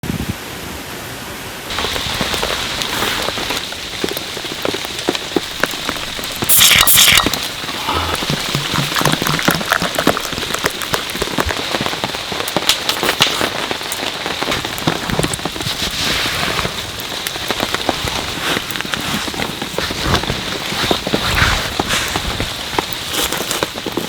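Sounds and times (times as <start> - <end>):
rain falling: 1.7 - 24.0
raindrops ticking: 1.7 - 24.0.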